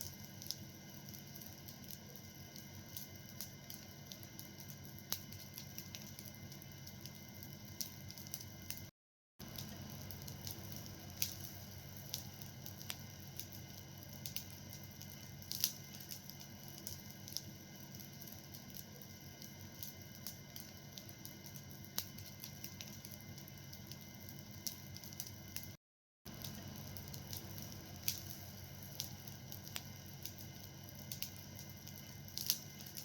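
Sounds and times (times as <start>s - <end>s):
fire crackling and popping: 0.0s - 33.0s
low rush of fire: 26.3s - 33.0s.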